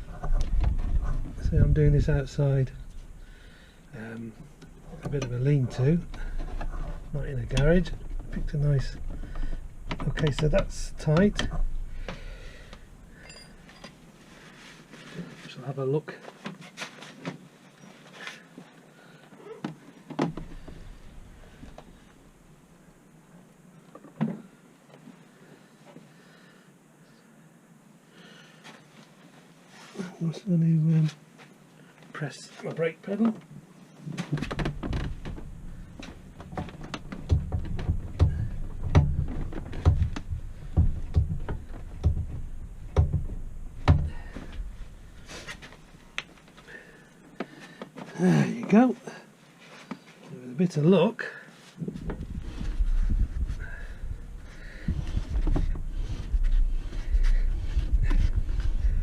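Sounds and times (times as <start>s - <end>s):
handling rumble: 0.0s - 13.8s, 34.1s - 48.7s, 51.8s - 59.0s
brake pedal thuds: 34.2s - 46.2s
low rumble: 34.6s - 46.2s.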